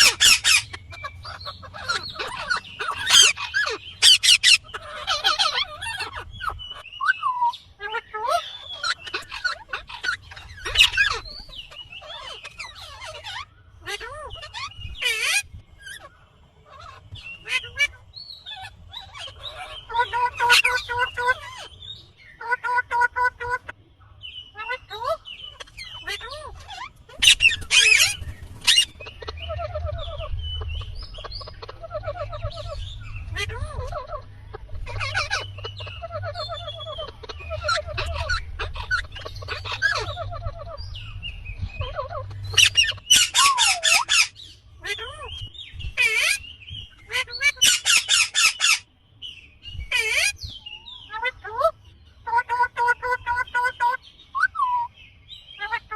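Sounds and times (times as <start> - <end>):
parrot chirping and whistling: 0.0 - 6.1, 34.8 - 44.4, 47.5 - 48.8
parrot squawking harshly: 0.0 - 6.6, 25.6 - 29.0, 34.8 - 40.6, 41.8 - 45.3, 46.0 - 46.4, 47.1 - 48.8
parrot squawking and calling: 0.0 - 23.8, 24.5 - 48.9, 49.8 - 55.9.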